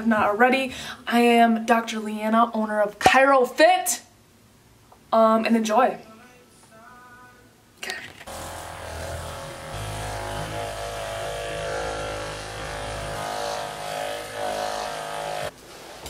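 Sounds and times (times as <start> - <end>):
massage gun motor buzz: 8.3 - 15.5.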